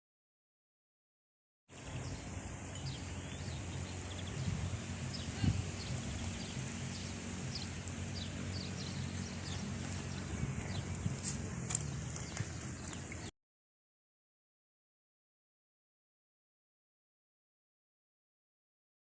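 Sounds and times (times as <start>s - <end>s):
small birds chirping: 1.7s - 13.3s
steady low rumble: 1.8s - 13.3s.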